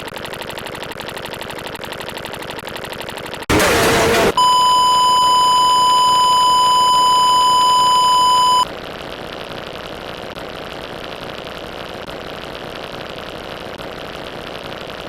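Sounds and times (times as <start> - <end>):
censor bleep tone: 4.4 - 8.7.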